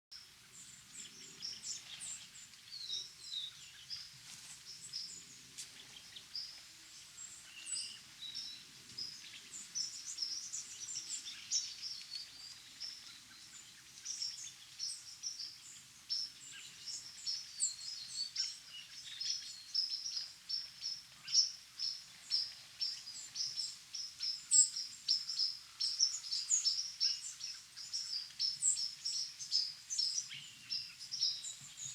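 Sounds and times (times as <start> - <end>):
small birds chirping: 7.2 - 31.9.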